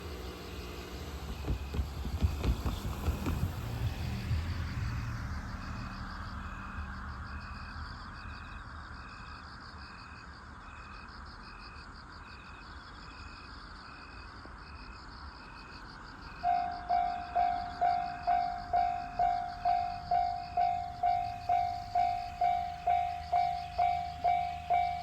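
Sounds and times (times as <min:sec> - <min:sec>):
insects chirping: 0:00.0 - 0:25.0
level crossing warning bell: 0:16.4 - 0:25.0.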